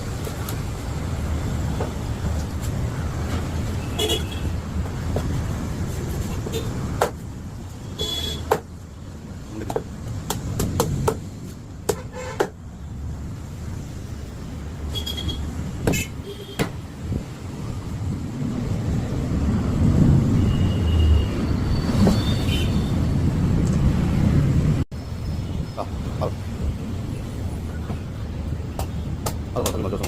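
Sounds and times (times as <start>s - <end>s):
traffic engine rumble: 0.0s - 30.0s
vehicle horn toots: 3.8s - 4.5s, 8.0s - 8.5s, 12.0s - 12.4s
sharp knocks: 8.4s - 8.7s, 9.6s - 12.6s, 16.6s - 16.8s.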